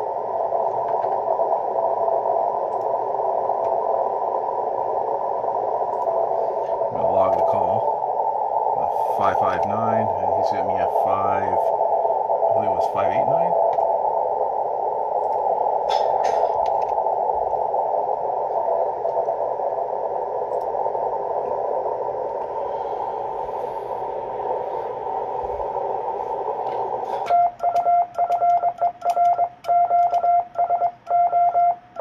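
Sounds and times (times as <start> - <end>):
shortwave radio static: 0.0 - 32.0
morse code tone: 27.2 - 32.0.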